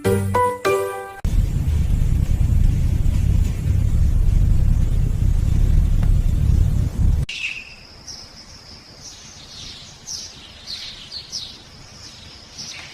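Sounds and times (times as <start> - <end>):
loud low rumble: 1.3 - 7.3
birds chirping: 7.3 - 12.9.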